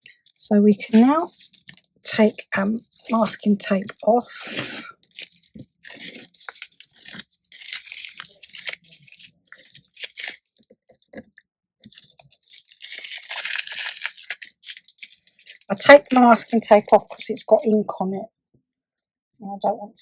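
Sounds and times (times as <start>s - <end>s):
paper crinkling: 0.1s - 17.9s
masking tape peeling: 4.4s - 10.5s, 11.9s - 17.7s.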